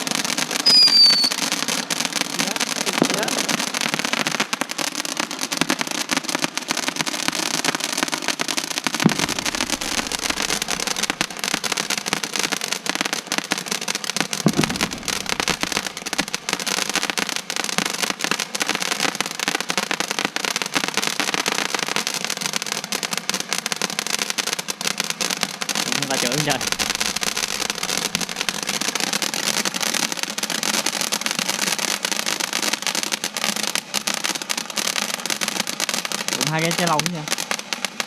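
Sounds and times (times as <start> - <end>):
loud firework bangs: 0.0 - 6.5, 8.8 - 18.8, 25.0 - 31.6
fireworks crackling: 0.0 - 38.0.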